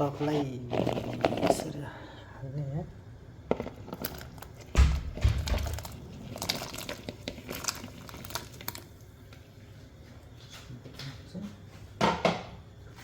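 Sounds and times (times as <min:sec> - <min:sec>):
crumpling and rustling: 0:00.0 - 0:01.8, 0:03.5 - 0:09.4.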